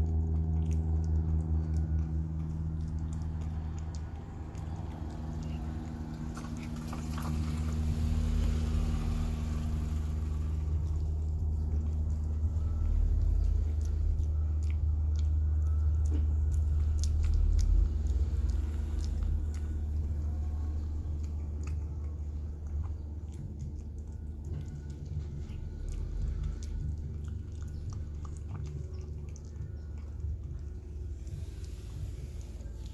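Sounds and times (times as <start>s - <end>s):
cat chewing wet food: 0.0s - 32.9s
steady low hum: 0.0s - 32.9s.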